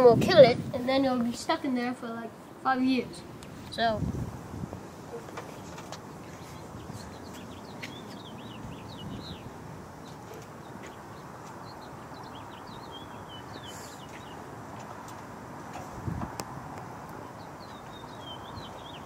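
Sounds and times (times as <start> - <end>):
steady background hiss: 0.0 - 17.6
small bird chirping: 5.3 - 14.5.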